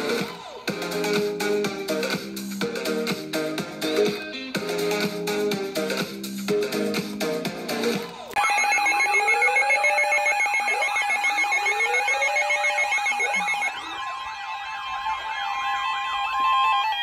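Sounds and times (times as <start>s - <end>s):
emergency alert tones: 8.4s - 15.4s
electronic music: 8.4s - 16.0s.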